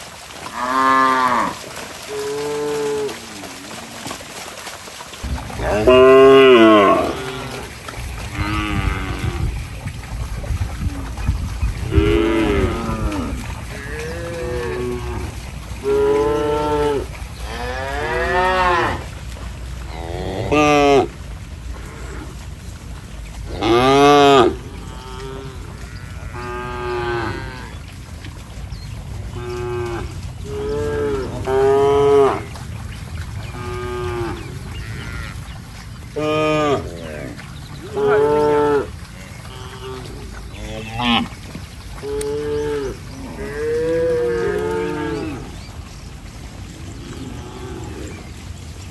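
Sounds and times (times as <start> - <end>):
cattle mooing: 0.5 - 4.2, 5.2 - 9.6, 11.0 - 22.4, 23.4 - 27.9, 29.3 - 32.6, 33.4 - 35.5, 36.2 - 41.4, 42.0 - 45.7, 46.9 - 48.4
low rumble: 5.2 - 36.2.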